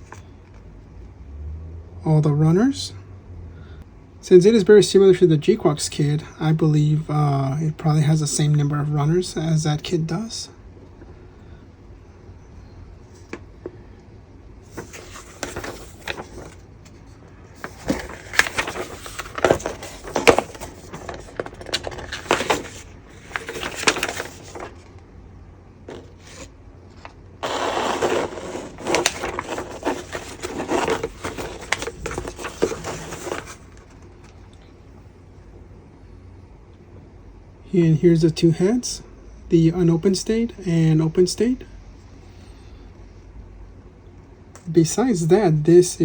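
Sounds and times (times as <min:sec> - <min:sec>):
plastic bags crinkling: 0:17.6 - 0:24.9, 0:27.4 - 0:34.0.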